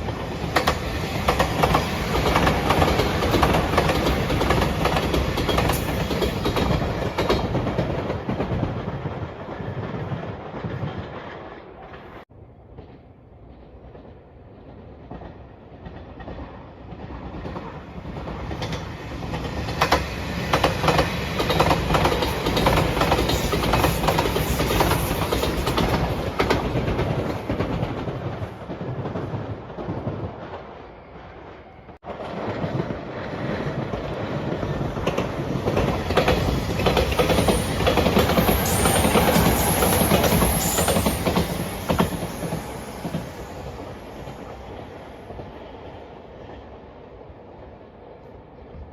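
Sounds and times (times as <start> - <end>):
electric train passing: 0.0 - 48.8
train wheels clattering over rail joints: 0.4 - 9.0, 15.1 - 30.2, 33.5 - 43.3.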